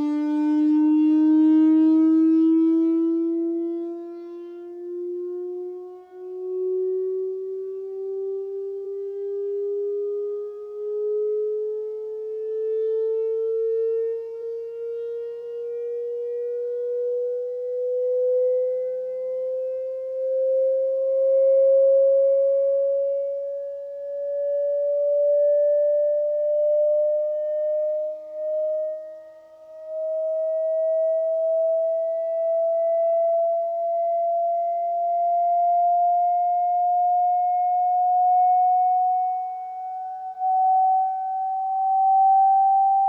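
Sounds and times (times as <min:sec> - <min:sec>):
rising test tone sweep: 0:40.4 - 0:43.0.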